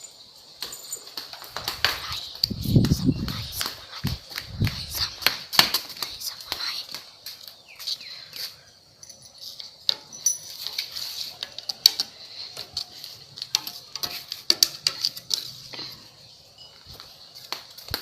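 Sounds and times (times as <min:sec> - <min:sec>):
faint high hiss: 0:00.0 - 0:18.0
sharp clicks and light knocks: 0:09.1 - 0:16.0.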